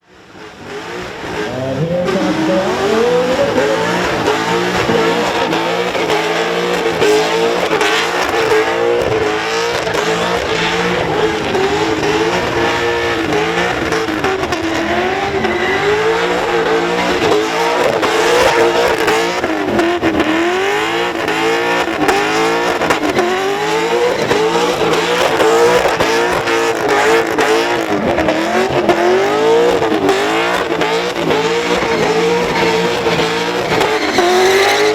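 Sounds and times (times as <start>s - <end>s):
car engine revving high: 0.1s - 34.9s
tyre squeal: 29.8s - 34.9s.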